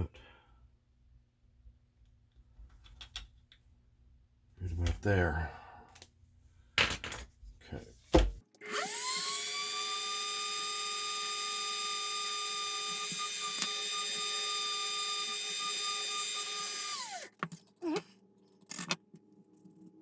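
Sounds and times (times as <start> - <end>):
small electric drill whining: 8.6 - 17.4.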